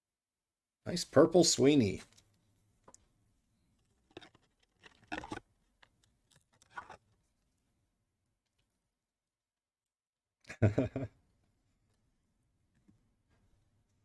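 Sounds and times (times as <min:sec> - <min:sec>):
trading cards rustling: 0:04.0 - 0:05.4.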